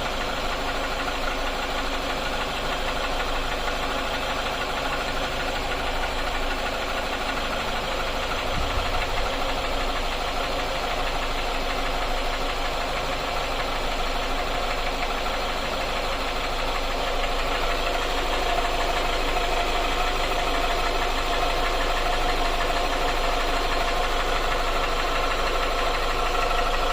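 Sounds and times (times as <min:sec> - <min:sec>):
engine running with a knock: 0:05.6 - 0:12.5.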